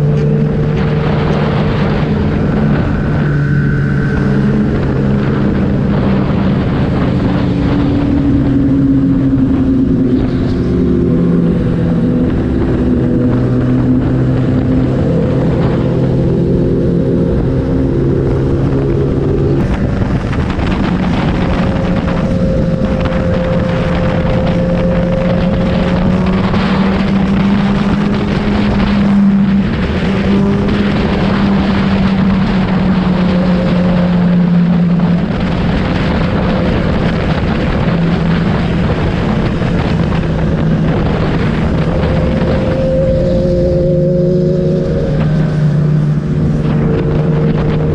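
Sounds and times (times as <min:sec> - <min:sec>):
motorcycle engine running: 0:00.0 - 0:47.9
wind noise on microphone: 0:00.0 - 0:47.9.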